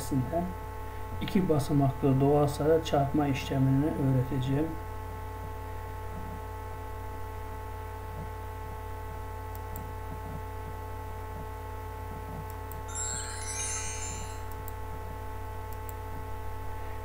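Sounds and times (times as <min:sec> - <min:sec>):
steady electrical hum: 0:00.0 - 0:17.0
scratchy wavering sound: 0:12.9 - 0:14.8.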